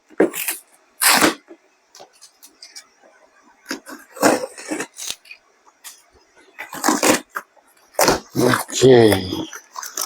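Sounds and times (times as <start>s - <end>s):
cardboard rustling and tearing: 0.2s - 1.4s, 3.7s - 5.4s, 6.6s - 10.0s.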